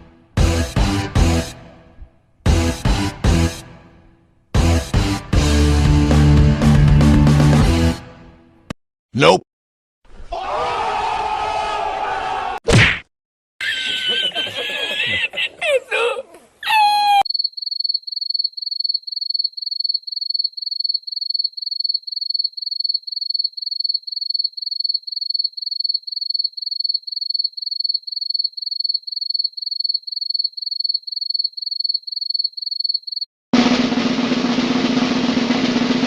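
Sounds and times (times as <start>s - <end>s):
cricket chirping: 17.2s - 33.3s
snare drum roll: 33.6s - 36.0s.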